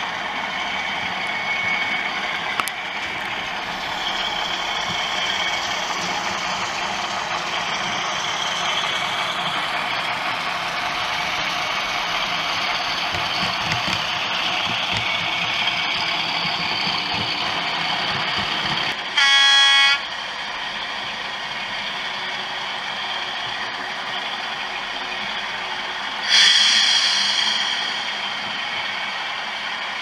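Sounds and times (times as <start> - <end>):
model locomotive running sound: 0.0 - 30.0
locomotive horn blast: 19.1 - 20.1.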